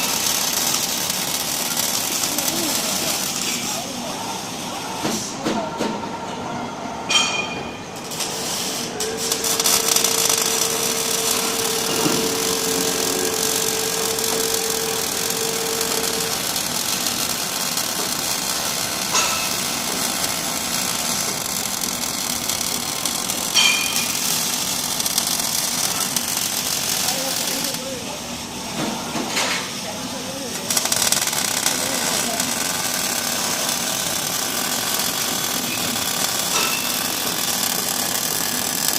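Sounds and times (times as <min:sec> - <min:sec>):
arc welding crackling hiss: 0:00.0 - 0:04.0, 0:08.0 - 0:28.6, 0:30.5 - 0:38.9
steady hum: 0:06.9 - 0:25.2.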